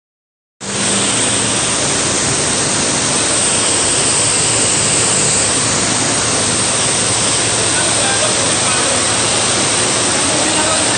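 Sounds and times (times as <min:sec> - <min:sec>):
machine rushing hiss: 0:00.6 - 0:10.9.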